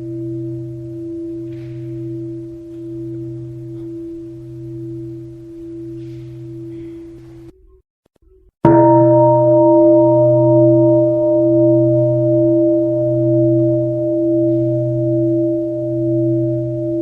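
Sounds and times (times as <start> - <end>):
bell struck and ringing: 0.0 - 7.4, 8.7 - 17.0.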